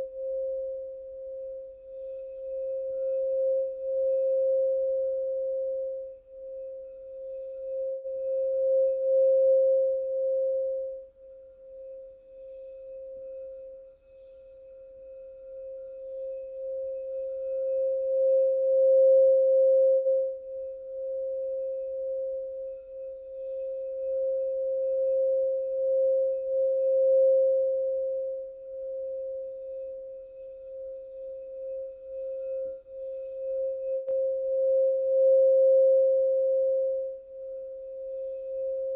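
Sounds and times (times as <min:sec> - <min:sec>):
singing bowl tone: 0:00.0 - 0:38.9.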